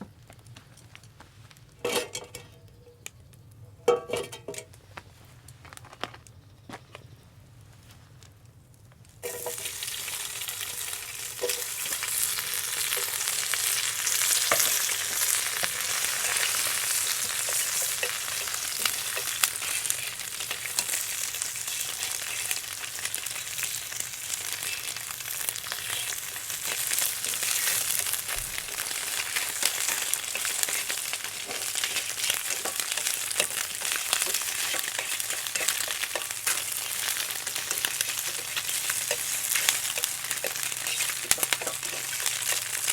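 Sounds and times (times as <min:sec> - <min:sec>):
food sizzling and spitting: 0:09.2 - 0:42.9.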